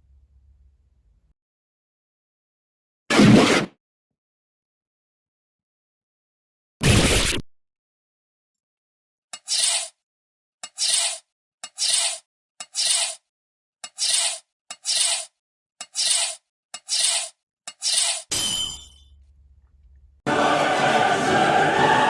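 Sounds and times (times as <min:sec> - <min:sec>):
rasping scrape: 0:09.4 - 0:10.0, 0:10.7 - 0:13.2, 0:13.9 - 0:18.3.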